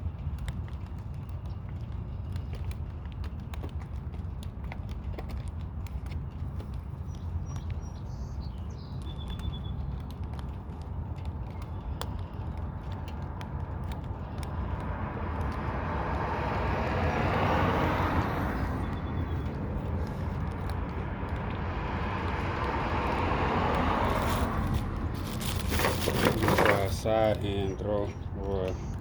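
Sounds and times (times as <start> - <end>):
steady low rumble: 18.1 - 29.0.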